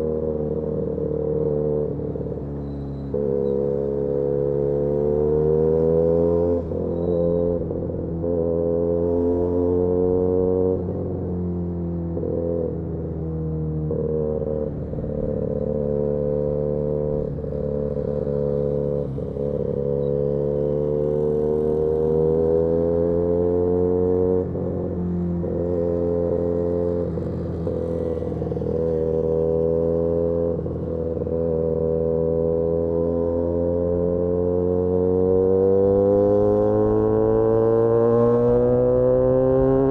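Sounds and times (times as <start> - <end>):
motorcycle engine running: 12.6 - 32.8.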